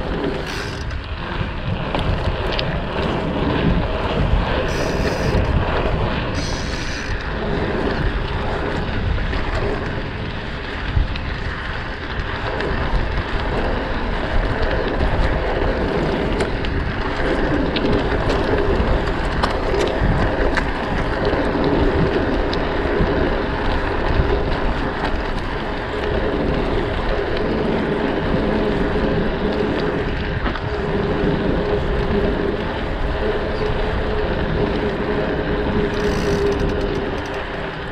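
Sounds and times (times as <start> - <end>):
bike rolling on pavement: 0.0 - 37.9
wind buffeting microphone: 0.0 - 37.9
light clicks and rattles: 35.8 - 37.6.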